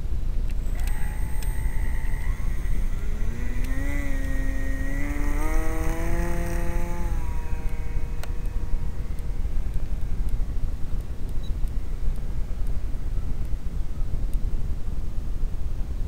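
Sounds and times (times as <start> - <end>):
steady low rumble: 0.0 - 16.0
model airplane motor whining: 0.5 - 11.1.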